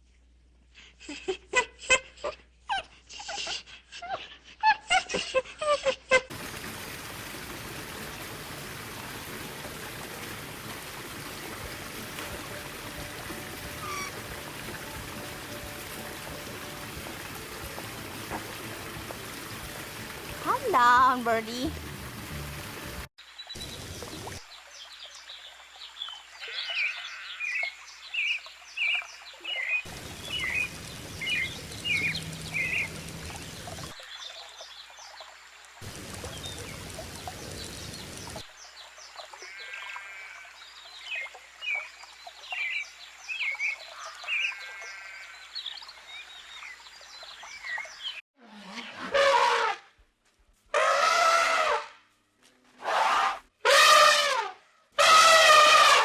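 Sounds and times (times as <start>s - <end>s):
loud drawn-out animal calls: 50.7s - 52.0s, 52.8s - 56.0s.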